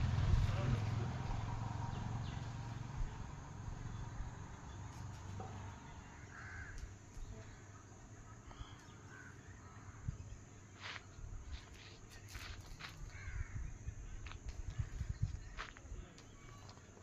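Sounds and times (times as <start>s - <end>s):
bird calling: 3.8s - 17.0s.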